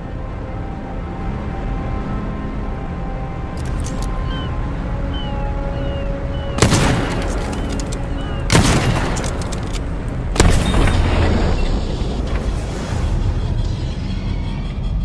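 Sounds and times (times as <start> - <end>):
background music: 0.0 - 15.0
loud gunshots with echo: 6.6 - 7.6, 8.5 - 9.5.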